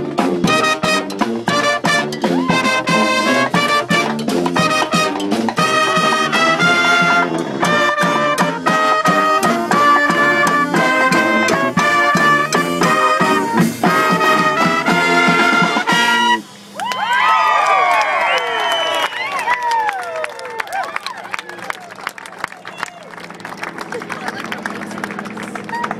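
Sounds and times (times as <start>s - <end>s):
steady drum beat: 0.0s - 16.7s
trumpets and trombones: 0.0s - 16.8s.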